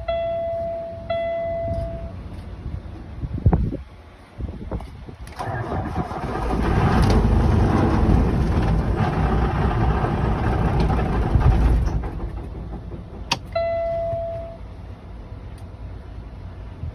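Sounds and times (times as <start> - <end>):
diesel engine cranking on starter: 5.2 - 15.0.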